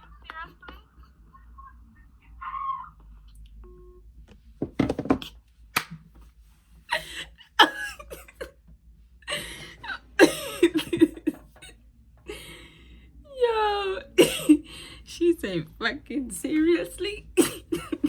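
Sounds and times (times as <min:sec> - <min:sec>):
woman laughing: 0:06.9 - 0:08.5, 0:09.3 - 0:11.7, 0:12.3 - 0:12.7, 0:13.3 - 0:18.0.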